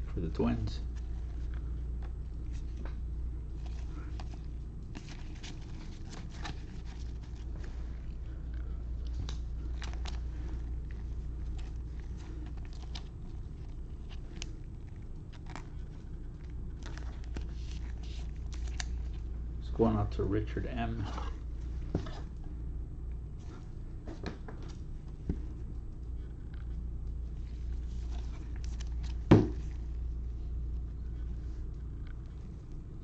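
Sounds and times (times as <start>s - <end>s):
steady low hum: 0.0s - 33.0s
cards and wrappers crinkling: 0.9s - 19.3s, 27.3s - 30.1s.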